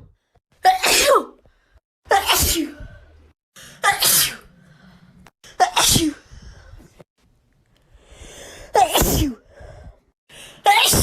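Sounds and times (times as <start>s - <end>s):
person sneezing: 0.6s - 1.3s, 2.1s - 2.8s, 3.8s - 4.5s, 8.8s - 9.4s.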